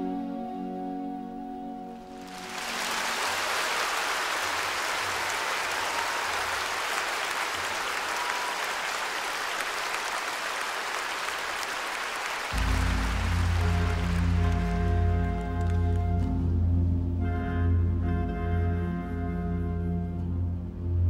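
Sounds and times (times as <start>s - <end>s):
orchestra low sustained notes: 0.0s - 3.6s, 12.5s - 21.0s
audience applauding: 2.0s - 16.4s.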